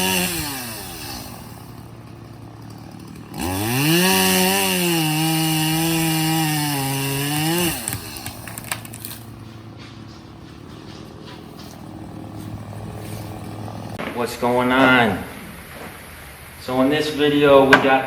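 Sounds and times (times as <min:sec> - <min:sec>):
chainsaw cutting wood: 0:00.0 - 0:14.0.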